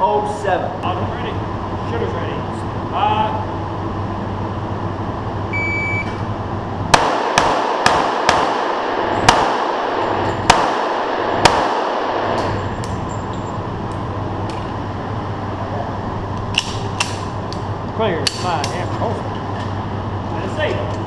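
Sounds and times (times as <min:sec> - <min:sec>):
pistol shots ringing indoors: 0:06.9 - 0:13.2.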